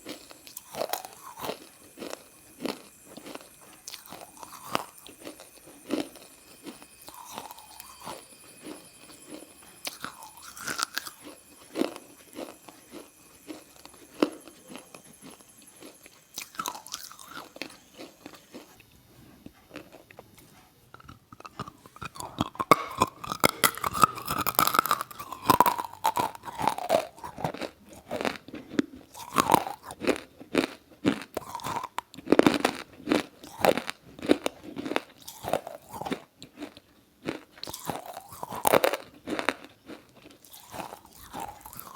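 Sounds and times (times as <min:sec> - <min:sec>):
close-up crunching and chewing: 0:00.0 - 0:41.9.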